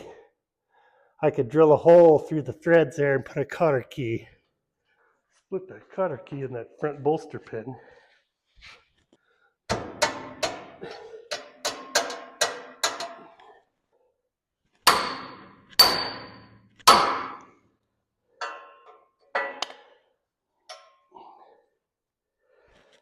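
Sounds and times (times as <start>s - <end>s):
hammer striking steel: 9.7s - 13.2s, 14.8s - 17.5s.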